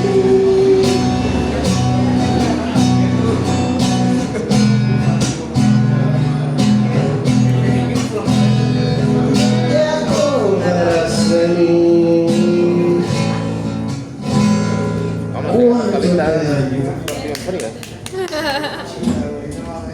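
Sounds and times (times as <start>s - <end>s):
instrumental ballad with guitar chords: 0.0s - 15.6s.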